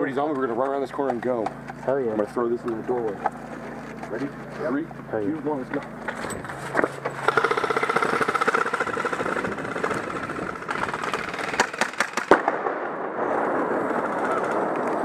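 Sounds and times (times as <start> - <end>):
airsoft gun full-auto rattle: 6.0 - 12.6
airsoft gun single cracks: 11.4 - 12.8.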